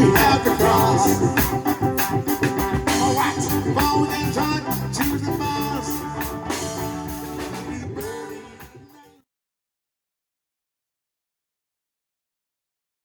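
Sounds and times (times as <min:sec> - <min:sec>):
reggae band playing: 0:00.0 - 0:09.2.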